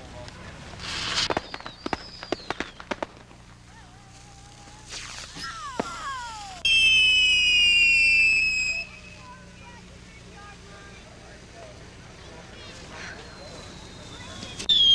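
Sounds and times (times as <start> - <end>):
firecracker string popping: 0.0 - 10.0
crack: 0.2 - 3.7, 4.9 - 6.1
loud high steady whistling tone: 0.8 - 3.0, 5.0 - 10.9, 12.6 - 14.9
falling whistles: 0.8 - 3.3, 4.8 - 9.6, 12.9 - 14.9.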